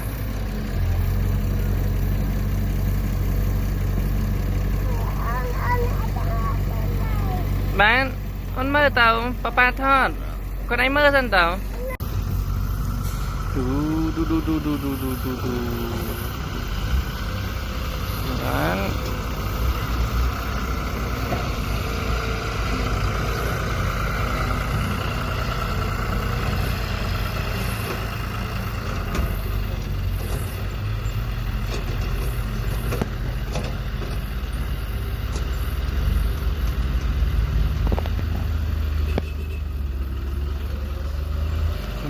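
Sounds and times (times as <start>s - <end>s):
heavy low rumble: 11.6s - 27.4s.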